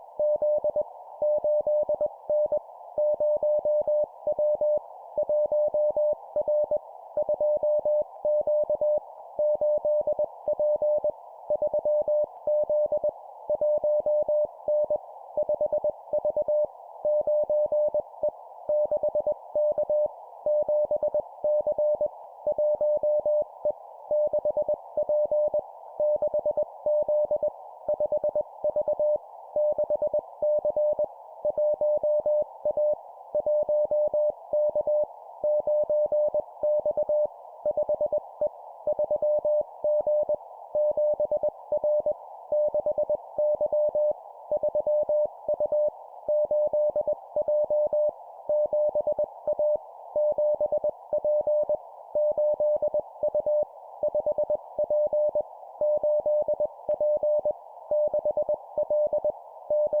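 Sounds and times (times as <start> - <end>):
morse code beeps: 38.9 - 60.0.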